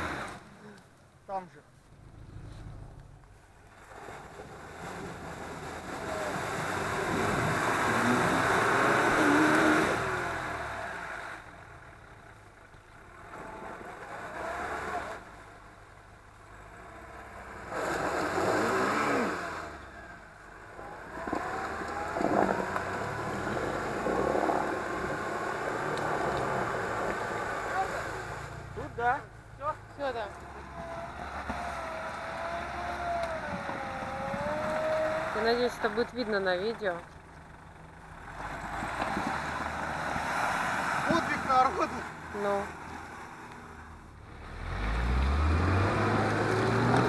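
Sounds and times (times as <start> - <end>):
off-road vehicle engine revving: 0.0 - 47.0.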